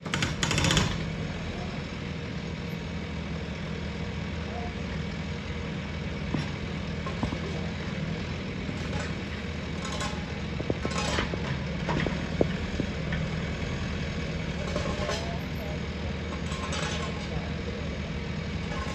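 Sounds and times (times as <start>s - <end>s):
heavy diesel engine running: 0.0s - 18.9s
short knocks and clatters: 6.3s - 15.4s.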